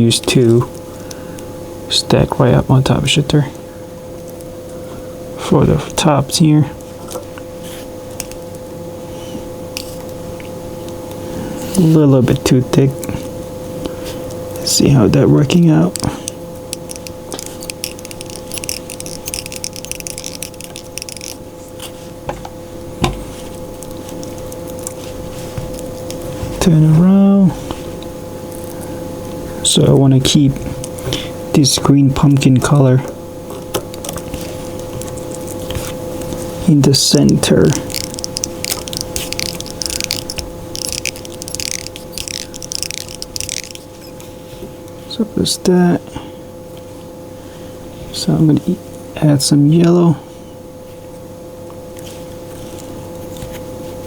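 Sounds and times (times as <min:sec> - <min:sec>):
faint steady hum: 0:00.0 - 0:54.0
hands rustling and clicking: 0:08.2 - 0:08.6, 0:15.8 - 0:22.0, 0:23.4 - 0:26.6, 0:33.5 - 0:44.3
thread wrapping rasps: 0:14.6 - 0:21.9, 0:36.7 - 0:44.3.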